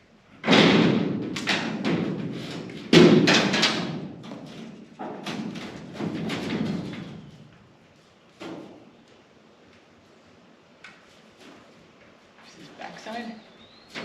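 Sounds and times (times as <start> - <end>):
ladder thuds and knocks: 0.4 - 7.4, 8.4 - 8.8.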